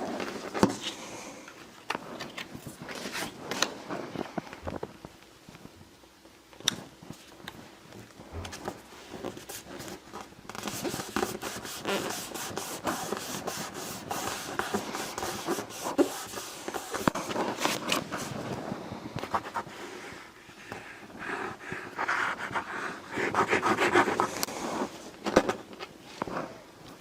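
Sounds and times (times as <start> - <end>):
paper rustling and scraping: 1.9 - 4.2, 8.5 - 20.3.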